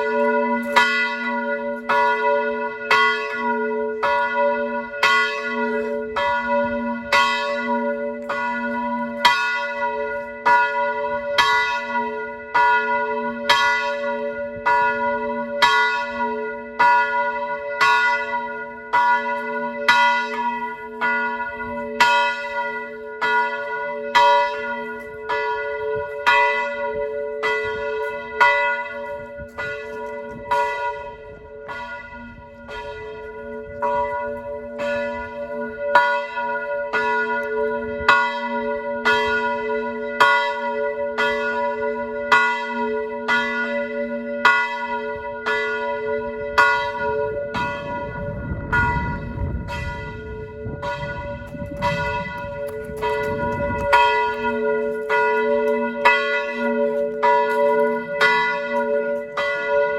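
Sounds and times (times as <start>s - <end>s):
church bell ringing: 0.0s - 59.9s
low rumbling noise: 47.4s - 54.1s.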